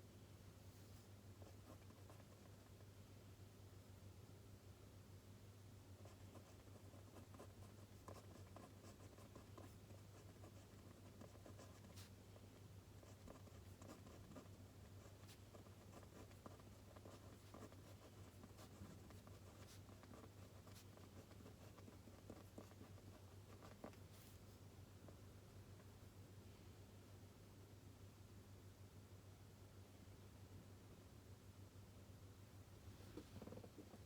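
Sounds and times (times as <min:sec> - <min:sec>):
low steady hum: 0:00.0 - 0:34.0
pen writing on paper: 0:06.1 - 0:12.1, 0:13.0 - 0:24.0.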